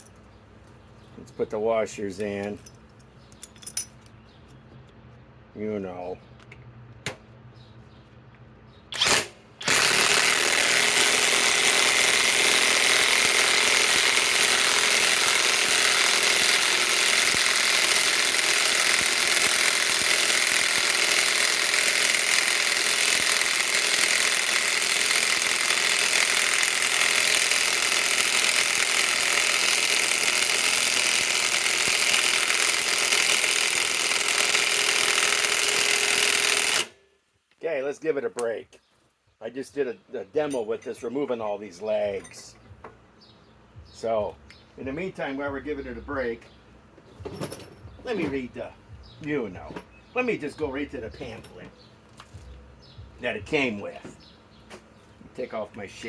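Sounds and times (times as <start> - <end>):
impact wrench hammering: 9.0 - 36.9.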